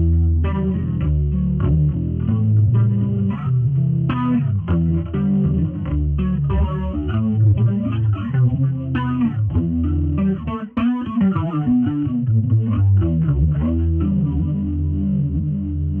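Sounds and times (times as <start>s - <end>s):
electric bass guitar playing: 0.0s - 16.0s.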